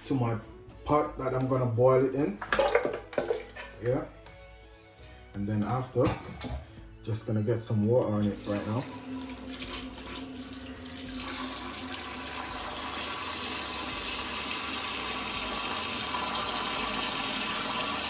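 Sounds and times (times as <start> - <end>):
tap water running into a pot: 2.4 - 3.8, 8.0 - 18.0.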